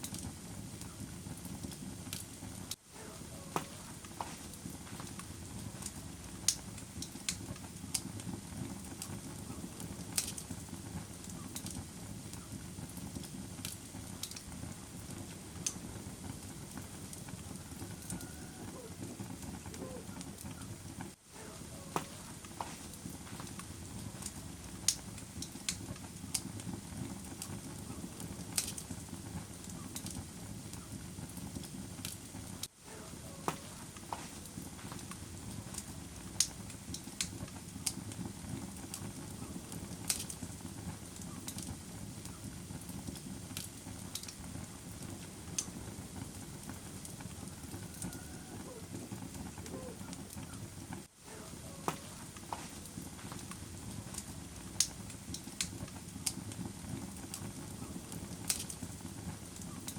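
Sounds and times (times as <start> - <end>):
fire flames rumbling: 0.0 - 59.9
fire popping and snapping: 0.0 - 59.9.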